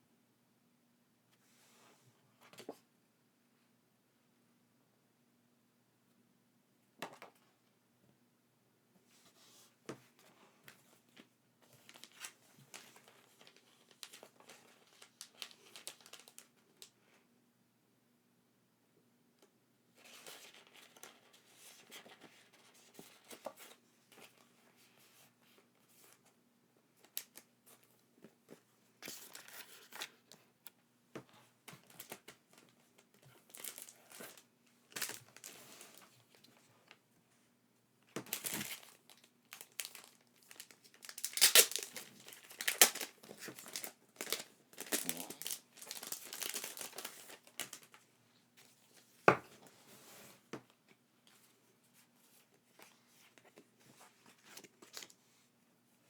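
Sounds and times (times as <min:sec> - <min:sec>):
packaging rustling and ripping: 0:11.8 - 0:16.5, 0:33.5 - 0:36.1, 0:38.2 - 0:48.0.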